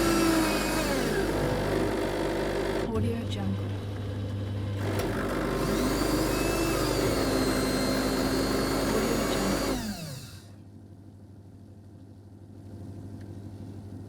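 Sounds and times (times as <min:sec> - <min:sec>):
coffee machine motor whining: 0:00.0 - 0:10.6.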